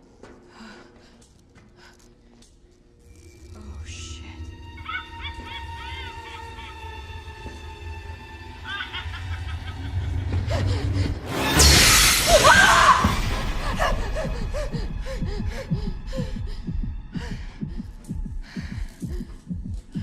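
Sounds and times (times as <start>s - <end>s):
rapid low throbbing pulses: 13.2s - 20.0s.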